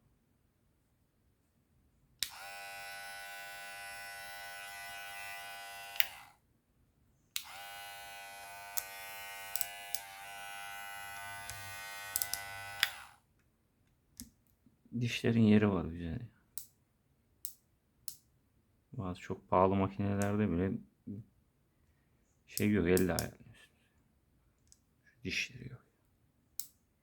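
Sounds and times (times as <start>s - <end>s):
hair clipper buzzing: 2.2s - 6.4s, 7.4s - 13.2s.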